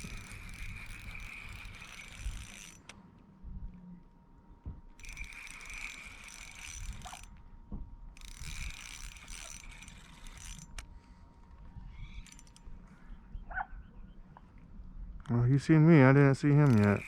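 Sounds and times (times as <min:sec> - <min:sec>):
fishing reel whirring: 0:00.0 - 0:02.9, 0:05.0 - 0:07.4, 0:08.1 - 0:10.9, 0:11.8 - 0:12.8, 0:16.4 - 0:17.0.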